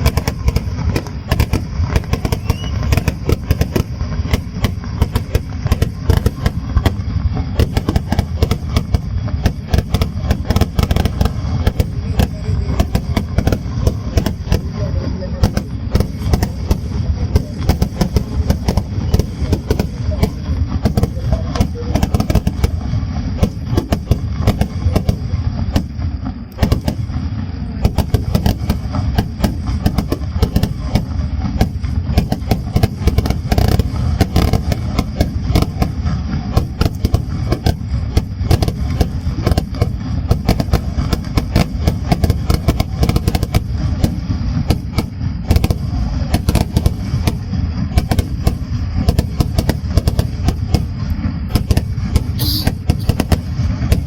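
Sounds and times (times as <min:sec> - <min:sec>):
fireworks bangs and crackles: 0:00.0 - 0:54.0
low rumble: 0:00.0 - 0:54.0.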